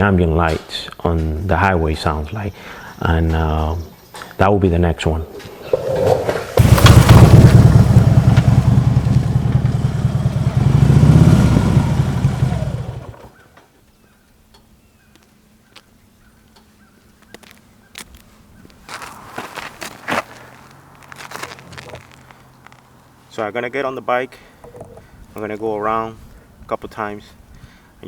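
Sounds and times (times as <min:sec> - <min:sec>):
motorcycle engine revving: 0:06.6 - 0:13.3.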